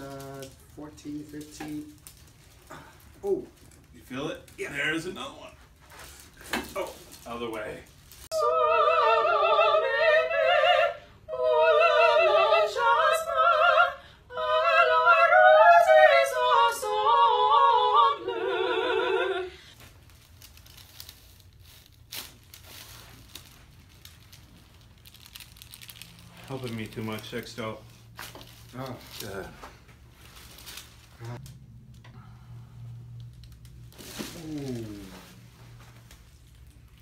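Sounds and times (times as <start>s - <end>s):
operatic singing with vibrato: 8.3s - 19.6s.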